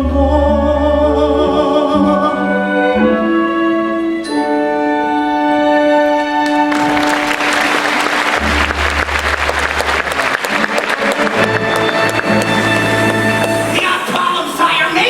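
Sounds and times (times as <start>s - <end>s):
audience applause: 6.4s - 13.8s.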